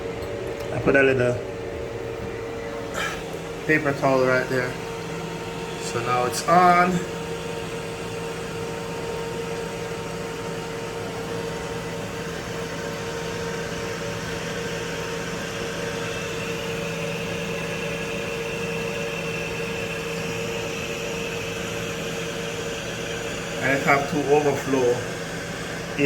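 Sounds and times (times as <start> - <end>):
constant hum: 0.0 - 20.7.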